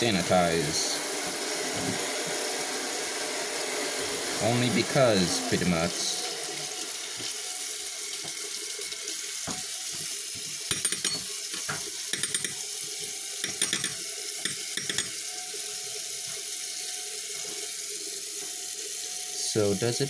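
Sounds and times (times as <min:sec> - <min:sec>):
tap water running into sink: 0:00.0 - 0:19.3
metallic clicks and clinks: 0:10.7 - 0:11.3, 0:12.1 - 0:12.6, 0:13.4 - 0:15.1.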